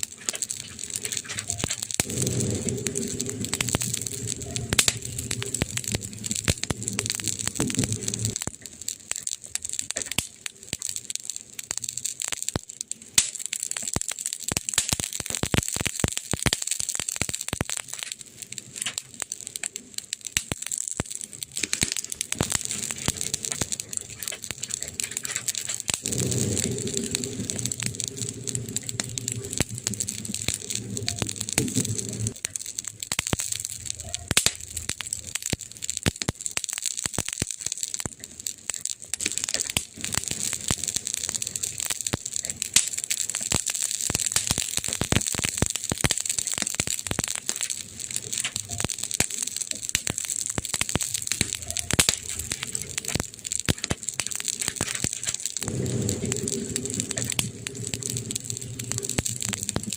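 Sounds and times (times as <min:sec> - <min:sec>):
wood fire crackling: 0:00.0 - 0:59.9
low rumble: 0:00.8 - 0:08.4, 0:22.5 - 0:33.0, 0:55.5 - 0:59.9.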